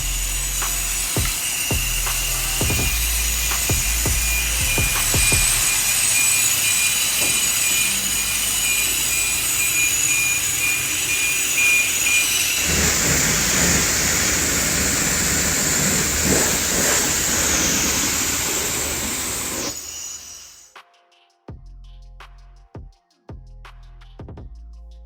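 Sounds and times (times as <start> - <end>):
loud rushing mechanical noise: 0.0 - 20.6.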